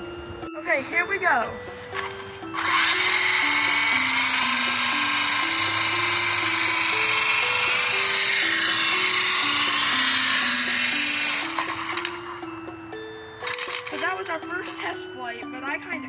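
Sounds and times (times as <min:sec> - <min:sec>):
toy drone rotors whining: 0:01.9 - 0:12.7, 0:13.4 - 0:15.0.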